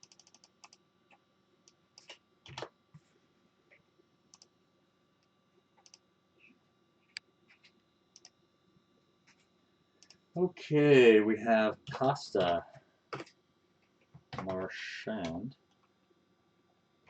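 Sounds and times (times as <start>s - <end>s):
keyboard and mouse clicks: 0.0s - 0.8s, 2.0s - 2.7s, 5.8s - 6.0s, 7.1s - 8.4s, 11.9s - 13.4s, 14.2s - 14.6s.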